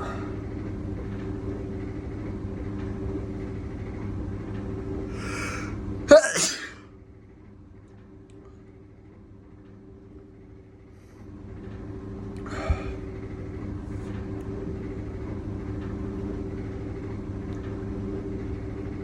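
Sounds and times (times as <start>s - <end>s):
low rumble and hum: 0.0s - 19.0s
person sneezing: 5.2s - 6.8s.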